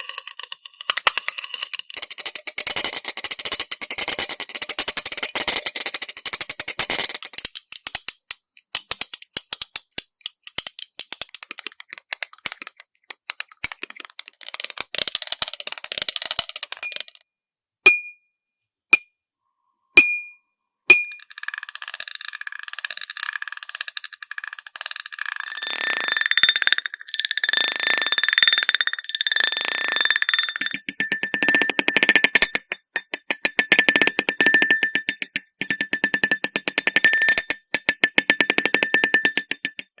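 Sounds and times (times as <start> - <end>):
rapid tapping on glass dishes: 8.8 - 14.8, 30.6 - 40.0.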